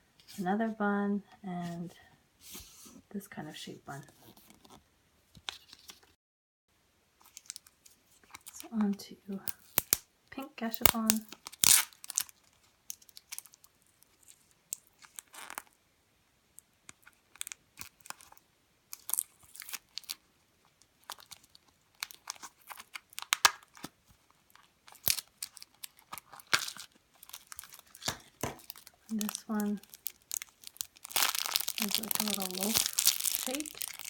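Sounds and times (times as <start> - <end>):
plastic crinkling: 7.2 - 8.8, 10.6 - 15.8, 16.9 - 34.0
tape tearing: 10.8 - 12.3, 24.6 - 34.0.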